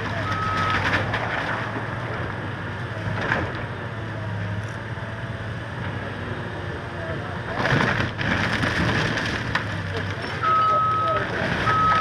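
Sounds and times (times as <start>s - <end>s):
diesel engine running: 0.0s - 12.0s
wood cracking: 7.5s - 10.4s.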